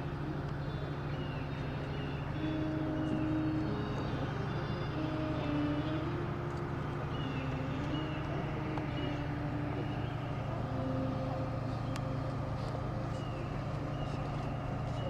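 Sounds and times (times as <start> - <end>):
low engine-like rumble: 0.0 - 15.0.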